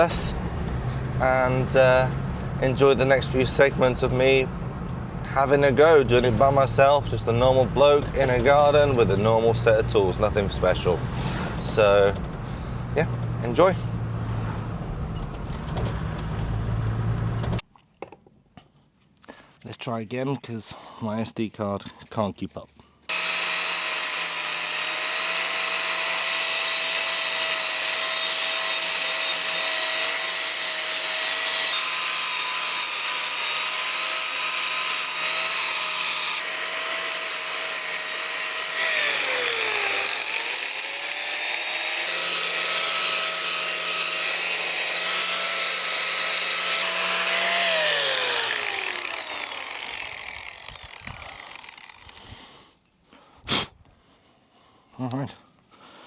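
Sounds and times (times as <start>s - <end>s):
angle grinder grinding metal: 0.0s - 4.5s, 23.1s - 52.4s.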